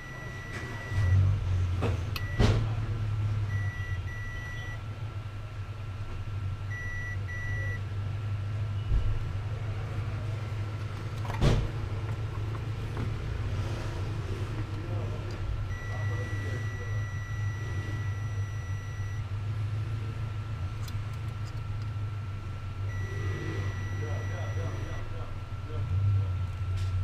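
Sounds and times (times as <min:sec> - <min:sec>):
short electronic beeps: 0:00.0 - 0:01.2, 0:03.5 - 0:04.8, 0:06.7 - 0:07.8, 0:15.7 - 0:19.2, 0:22.9 - 0:25.1.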